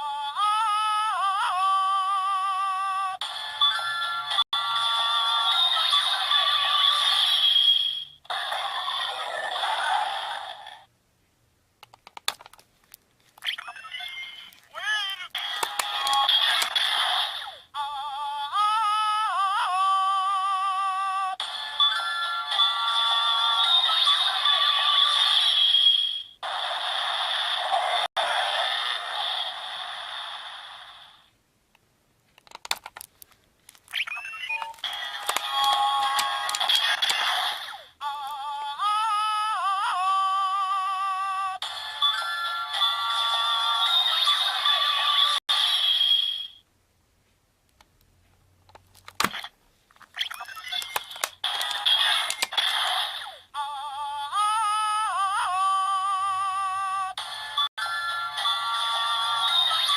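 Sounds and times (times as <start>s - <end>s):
music from toy speaker: 3.2s - 7.9s, 15.4s - 16.8s, 21.4s - 25.6s, 34.1s - 37.2s, 41.6s - 46.4s, 57.2s - 59.9s
sharp plastic clicks: 11.8s - 13.5s, 15.4s - 16.8s, 32.3s - 34.0s, 34.6s - 37.2s, 47.7s - 52.7s
toy sound effect: 13.4s - 18.7s, 33.8s - 38.6s, 50.1s - 54.1s.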